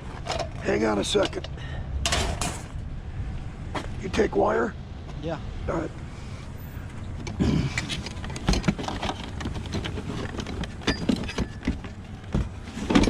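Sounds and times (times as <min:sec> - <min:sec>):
vehicle engine rumbling: 0:00.0 - 0:13.0
scrap metal clanking: 0:02.0 - 0:02.8.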